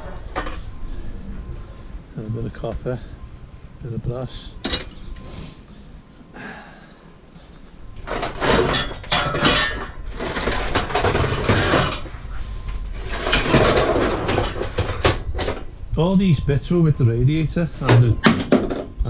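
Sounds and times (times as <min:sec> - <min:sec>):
scrap metal clattering: 0:08.0 - 0:15.7.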